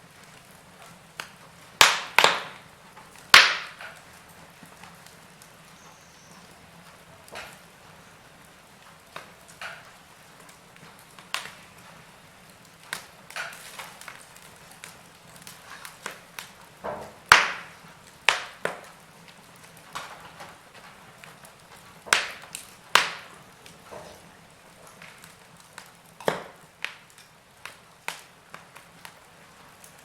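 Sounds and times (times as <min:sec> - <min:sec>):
wood fire crackling: 0:00.0 - 0:30.0.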